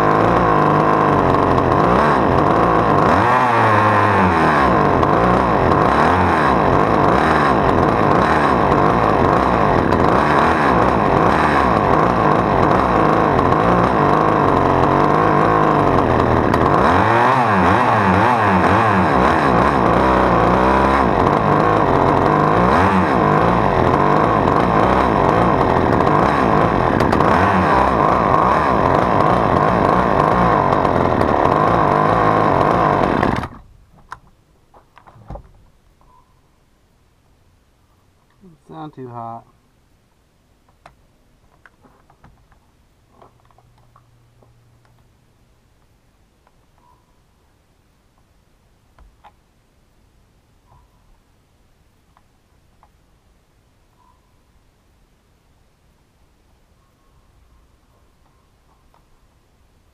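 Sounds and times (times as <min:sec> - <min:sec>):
chainsaw engine revving: 0:00.0 - 0:33.7.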